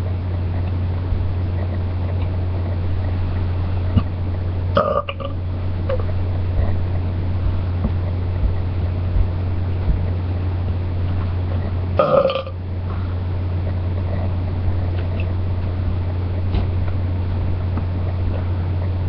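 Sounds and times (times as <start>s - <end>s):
steady low drone: 0.0s - 19.0s
person belching: 4.8s - 6.0s, 12.0s - 12.6s.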